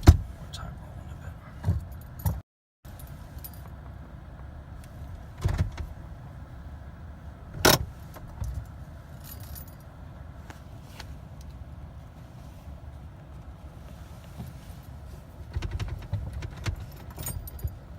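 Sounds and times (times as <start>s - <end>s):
keys jangling in ignition: 7.7s - 9.9s, 15.6s - 17.9s.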